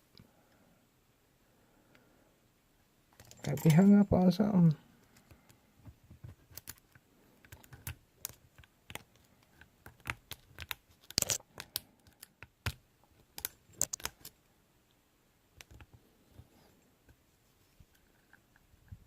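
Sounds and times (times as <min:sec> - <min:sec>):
lock picks clicking and scraping: 0:03.1 - 0:04.0, 0:06.3 - 0:14.4.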